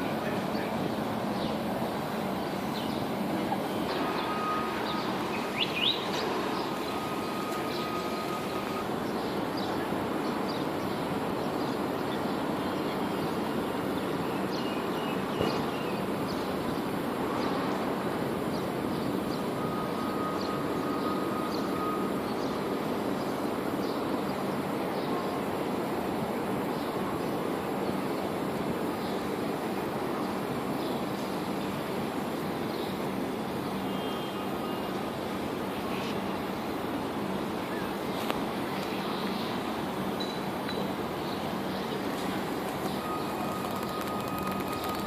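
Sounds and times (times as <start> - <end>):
faint steady tone: 0.0 - 10.2, 19.1 - 24.3, 28.6 - 45.0
city background noise: 0.0 - 45.0
high bird chirps: 3.8 - 8.8, 42.9 - 45.0.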